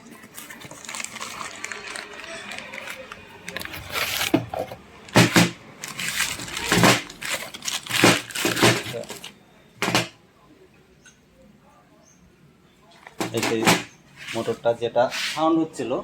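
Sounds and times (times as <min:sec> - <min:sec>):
metallic knocks and crunches: 0:03.6 - 0:10.2, 0:13.1 - 0:13.9.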